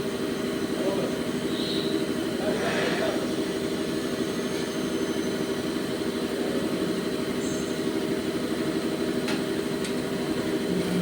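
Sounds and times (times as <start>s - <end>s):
lathe machine hum: 0.0s - 11.0s.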